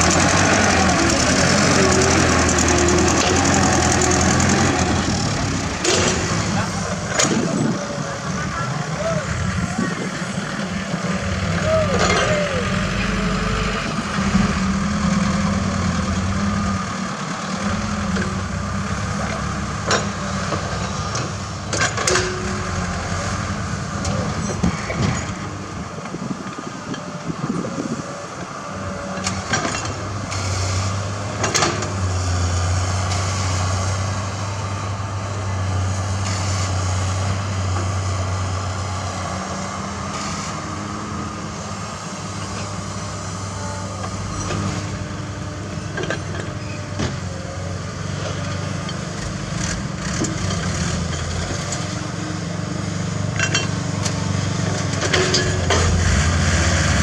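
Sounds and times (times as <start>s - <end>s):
heavy machinery diesel engines: 0.0s - 57.0s
metal clanks and knocks: 21.1s - 22.8s, 24.0s - 27.0s, 53.4s - 56.1s.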